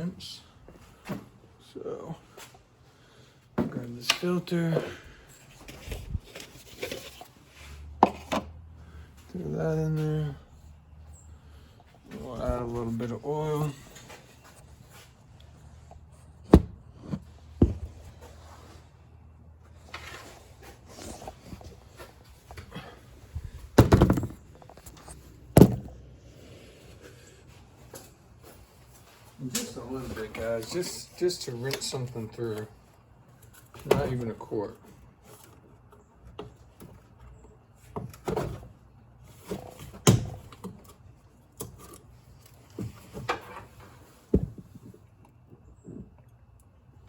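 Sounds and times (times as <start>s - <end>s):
objects knocking and clunking: 15.8s - 18.4s, 20.9s - 26.2s, 42.7s - 46.3s.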